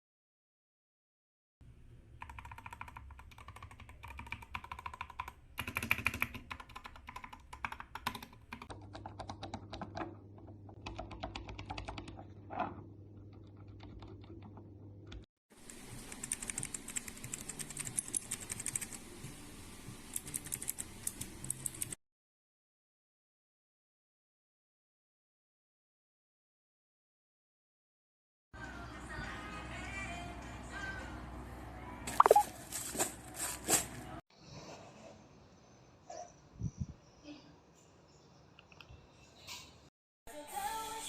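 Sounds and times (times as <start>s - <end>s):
mechanical keyboard typing: 2.2s - 10.1s, 10.7s - 12.2s, 13.3s - 19.0s, 20.1s - 22.0s.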